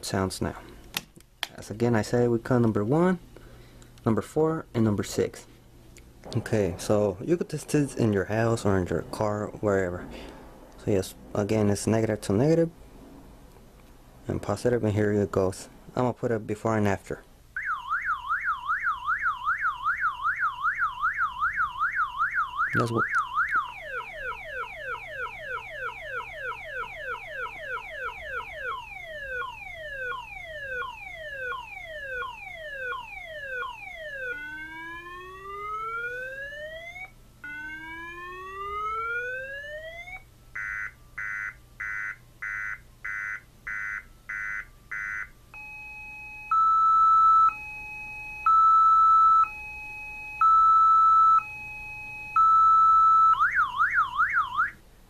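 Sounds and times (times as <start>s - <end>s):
car alarm siren: 17.6s - 54.8s.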